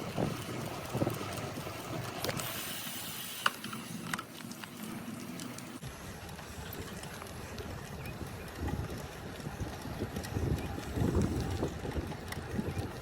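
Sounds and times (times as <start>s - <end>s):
bike clicks and rattles: 0.0s - 13.0s
bike tyres rumbling on pavement: 0.0s - 13.0s
wind on microphone: 5.9s - 13.0s.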